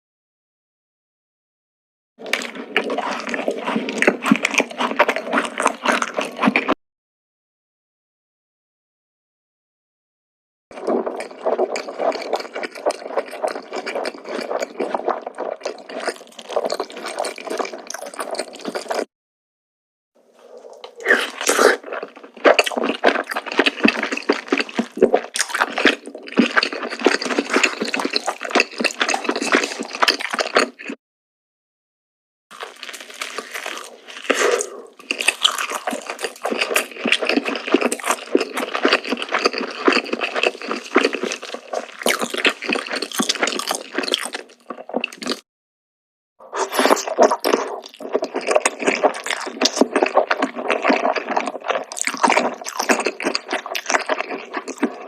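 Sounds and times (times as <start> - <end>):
wet chewing and smacking: 2.2 - 6.8, 10.8 - 19.1, 20.4 - 31.0, 32.5 - 45.4, 46.4 - 55.0.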